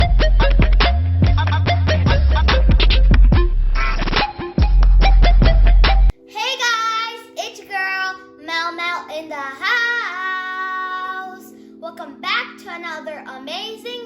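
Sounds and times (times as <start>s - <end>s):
heavy hip-hop beat: 0.0s - 6.2s
child singing a jingle: 6.2s - 14.0s.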